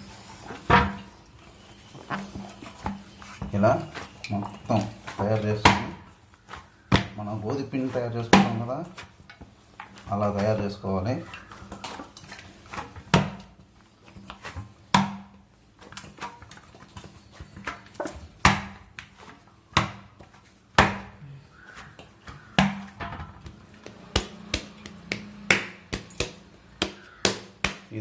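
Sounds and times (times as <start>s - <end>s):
hands kneading dough: 0.0s - 28.0s
slaps and knocks: 5.5s - 6.0s, 8.2s - 9.0s, 22.3s - 28.0s.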